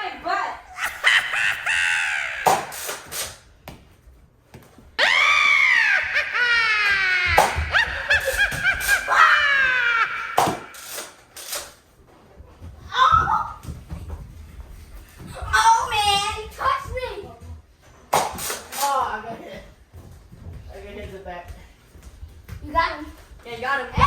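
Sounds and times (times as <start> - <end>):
shrieking squealing laughter: 0.7 - 3.1, 5.0 - 11.2.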